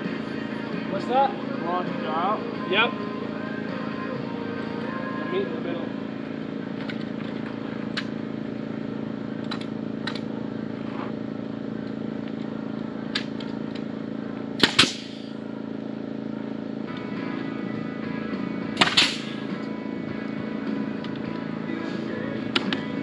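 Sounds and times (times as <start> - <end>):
steady low hum: 0.0 - 23.0
nailer clicks: 14.6 - 15.3, 18.8 - 19.4
nailer loud snaps: 14.6 - 15.3, 18.8 - 19.5.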